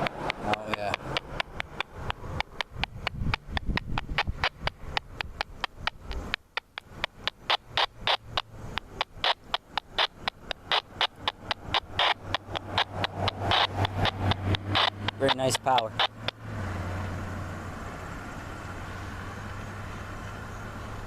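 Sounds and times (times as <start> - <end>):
train wheels clicking over rail joints: 0.0 - 16.4.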